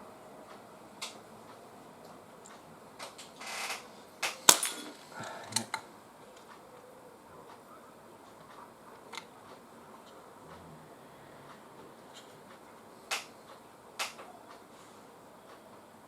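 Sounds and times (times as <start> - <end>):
quiet clicks and knocks: 11.4 - 14.7.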